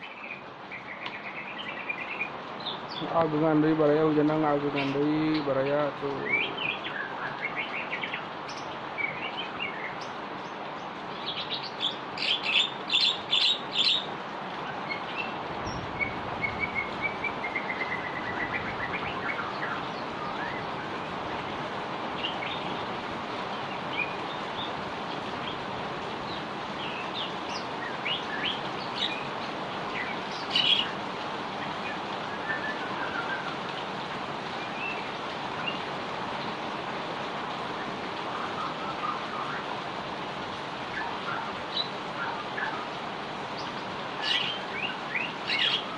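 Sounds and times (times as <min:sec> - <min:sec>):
small birds chirping: 0:00.0 - 0:36.9, 0:37.6 - 0:45.9
heavy rain: 0:00.0 - 0:45.9.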